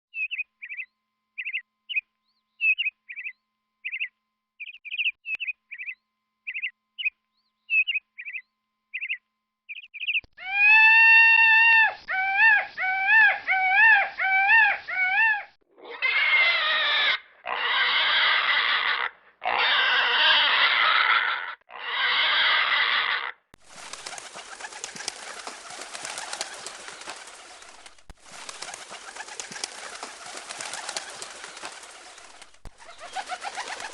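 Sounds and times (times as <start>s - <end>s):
peacock calling: 21.9s - 33.9s
steady hiss-like rustle: 23.6s - 33.9s.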